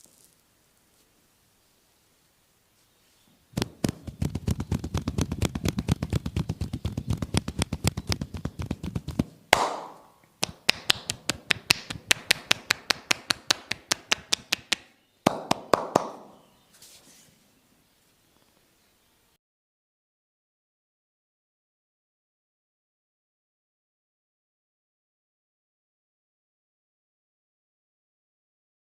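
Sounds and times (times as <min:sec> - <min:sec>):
hands striking body in massage: 0:03.6 - 0:16.4
hollow clap: 0:03.6 - 0:16.4.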